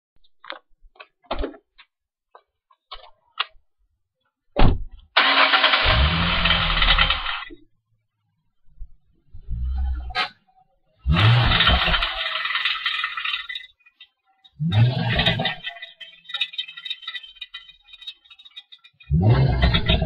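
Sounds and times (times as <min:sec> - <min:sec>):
car engine running: 0:05.2 - 0:07.5
harsh rattling: 0:05.2 - 0:07.5, 0:11.2 - 0:20.0.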